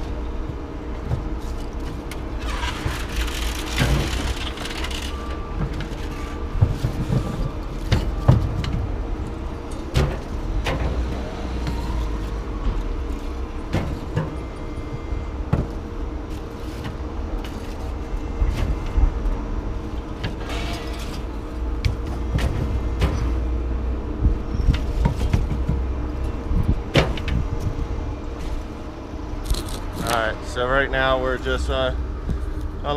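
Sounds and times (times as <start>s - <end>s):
engine rumbling: 0.0s - 32.9s.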